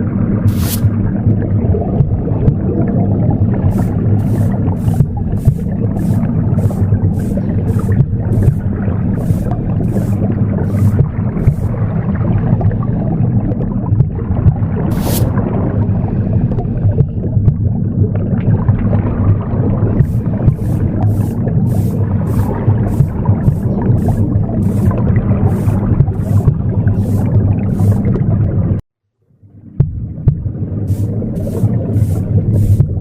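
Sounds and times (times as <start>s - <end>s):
low rumbling womb whoosh: 0.0s - 28.8s
broom sweeping: 0.5s - 1.0s, 3.7s - 11.8s, 14.9s - 15.4s, 20.0s - 28.2s, 30.9s - 33.0s.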